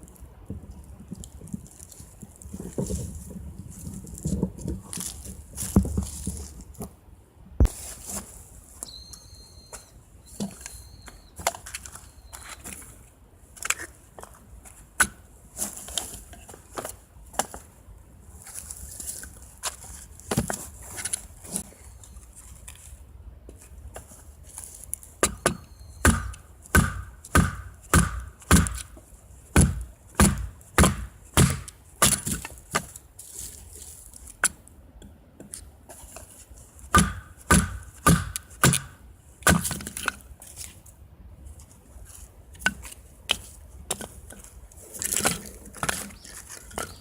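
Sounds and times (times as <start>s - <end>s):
axe chopping wood: 25.2s - 32.9s, 36.9s - 40.2s.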